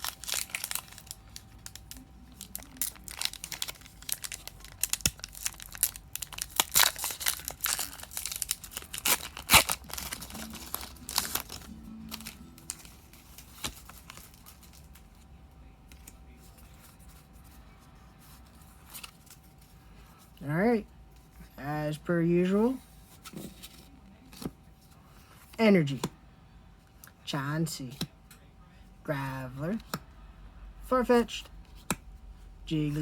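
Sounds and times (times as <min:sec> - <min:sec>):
foil wrapper crinkling and tearing: 0:00.0 - 0:15.0.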